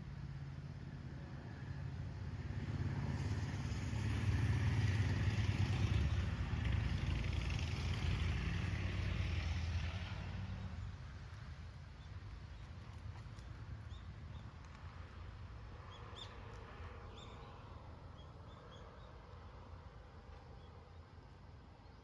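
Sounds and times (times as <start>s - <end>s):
vehicle passing by: 0.3s - 11.6s.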